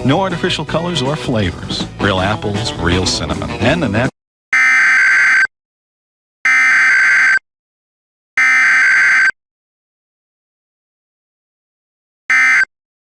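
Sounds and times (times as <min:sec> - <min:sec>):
digital data tone bursts: 0:06.5 - 0:07.4, 0:08.4 - 0:09.3, 0:12.3 - 0:12.7.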